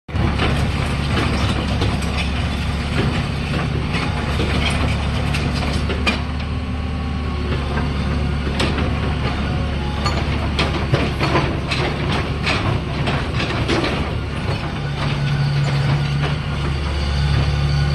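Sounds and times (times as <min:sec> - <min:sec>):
excavator diesel engine running: 0:00.1 - 0:17.9.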